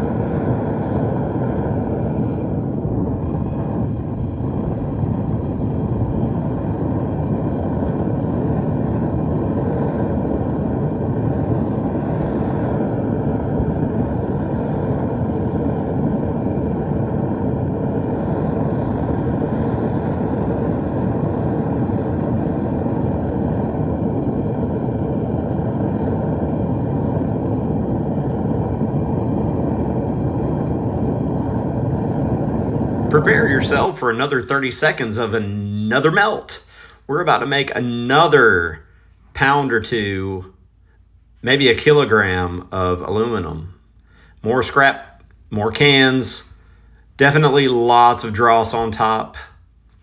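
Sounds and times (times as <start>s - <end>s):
furnace burner rushing: 0.0s - 40.5s.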